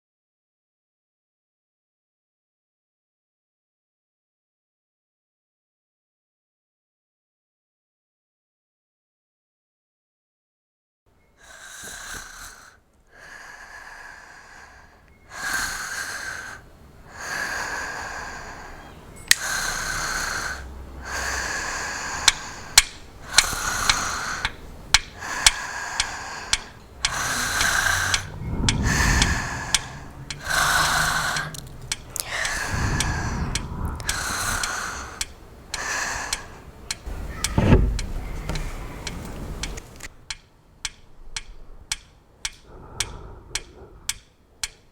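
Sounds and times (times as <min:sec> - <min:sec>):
heavy human breathing: 0:11.4 - 0:40.0, 0:42.6 - 0:44.8
sharp clicks: 0:22.2 - 0:44.9
low thumps: 0:37.0 - 0:39.9.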